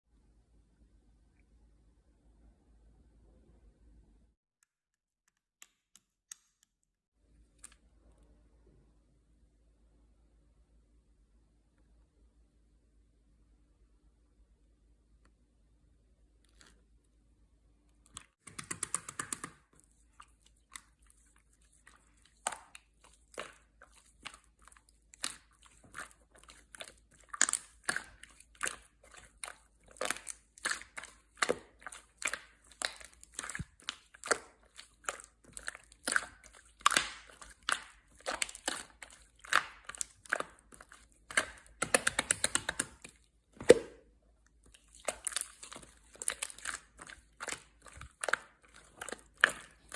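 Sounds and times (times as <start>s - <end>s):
slime squeezed wet crackles: 19.1s - 49.9s.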